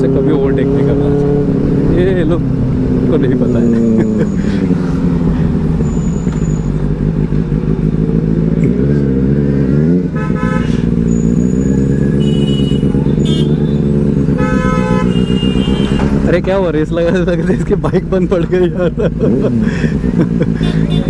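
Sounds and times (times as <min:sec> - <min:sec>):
motorcycle engine running: 0:00.0 - 0:21.0
vehicle horns tooting: 0:10.1 - 0:16.2, 0:20.6 - 0:21.0.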